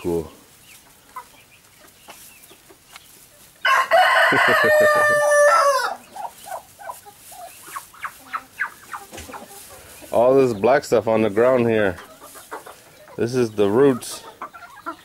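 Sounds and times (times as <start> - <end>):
chickens clucking: 0.0 - 15.0
rooster crowing: 3.6 - 6.0.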